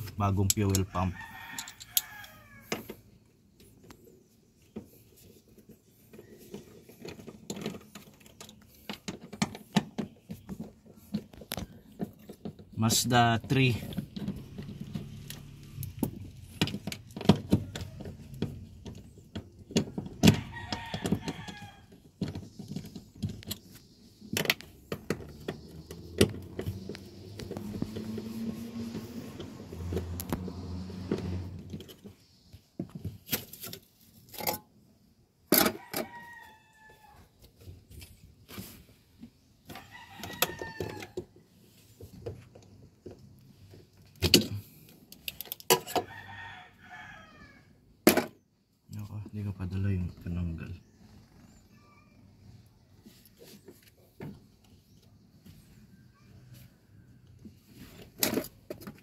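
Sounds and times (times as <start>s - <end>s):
rooster crowing: 0.9s - 2.8s, 20.2s - 21.9s, 35.7s - 37.3s, 39.7s - 41.2s, 45.9s - 47.8s.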